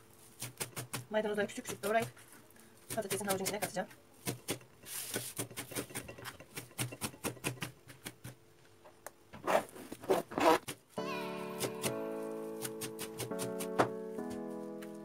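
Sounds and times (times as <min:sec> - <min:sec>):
background music: 0:11.0 - 0:15.0.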